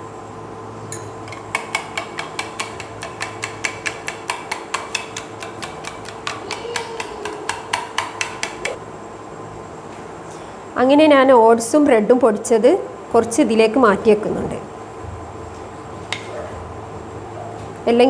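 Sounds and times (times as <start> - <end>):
spoon clinking against bowl: 0.9 - 8.7.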